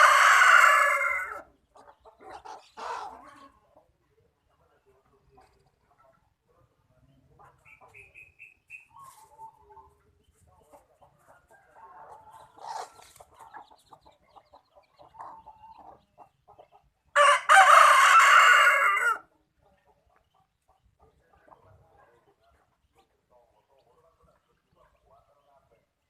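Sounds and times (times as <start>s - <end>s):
rooster crowing: 0.0s - 1.4s, 17.2s - 19.2s
chickens clucking softly: 0.0s - 17.2s, 18.2s - 26.0s.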